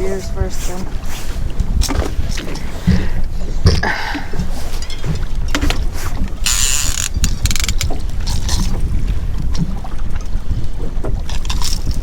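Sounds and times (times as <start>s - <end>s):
low rumble of wind and boat: 0.0s - 12.0s
fishing reel drag ratcheting: 6.4s - 7.9s.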